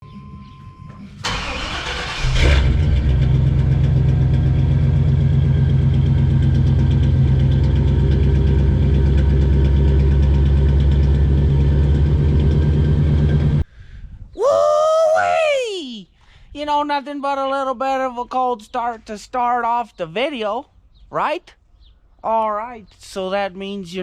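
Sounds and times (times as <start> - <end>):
engine cranking and running: 1.1 - 13.6.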